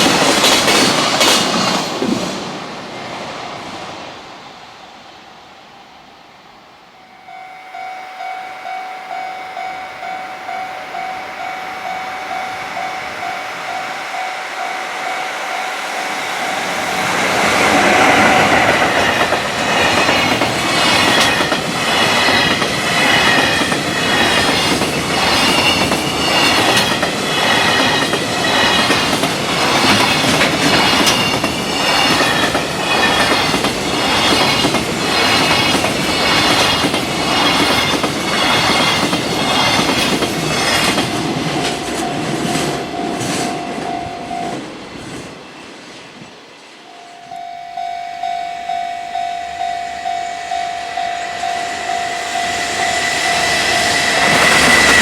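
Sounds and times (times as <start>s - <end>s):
freight train passing: 0.0s - 55.0s
level-crossing bell ringing: 6.9s - 28.9s, 39.7s - 44.6s, 46.8s - 55.0s.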